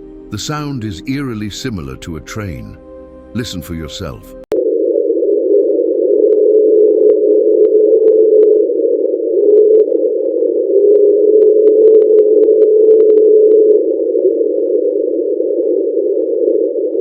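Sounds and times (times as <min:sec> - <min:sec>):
underwater iceberg drone: 0:04.5 - 0:17.0.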